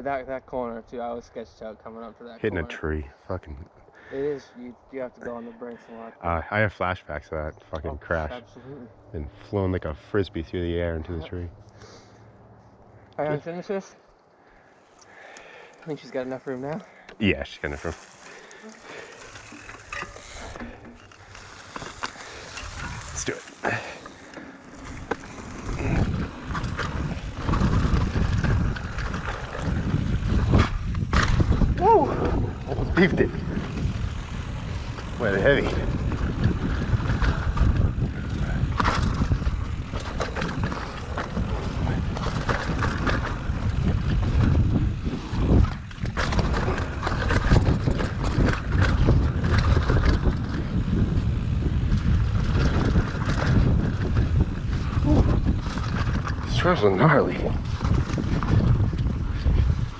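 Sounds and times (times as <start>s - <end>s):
bike chain and frame rattling: 17.4s - 59.9s
bike tyres rumbling over dirt: 17.4s - 59.9s
wind buffeting microphone: 18.8s - 59.9s
bike knocks and rattles: 36.0s - 56.5s.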